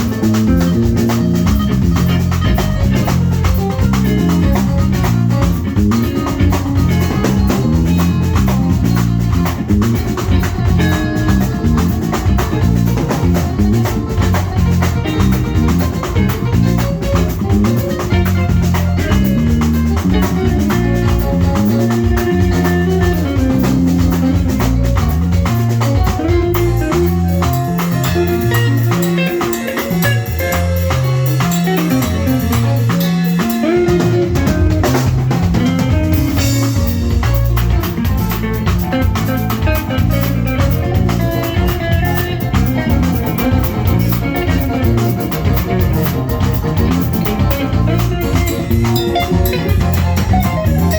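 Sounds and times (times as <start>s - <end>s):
bass line: 0.0s - 50.9s
drums: 0.0s - 50.9s
live band playing instrumental: 0.0s - 50.9s.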